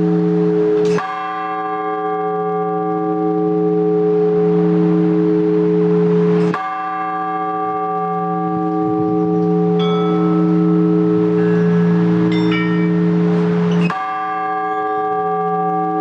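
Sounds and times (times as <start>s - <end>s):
large church bells ringing: 0.0s - 16.0s
small high bells struck: 8.4s - 16.0s.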